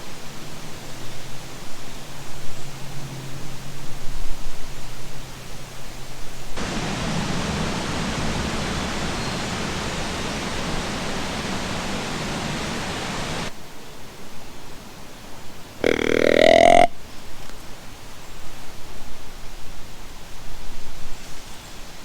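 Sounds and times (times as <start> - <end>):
strong wind gusting through trees: 6.3 - 15.8
wind buffeting microphone: 6.6 - 13.5.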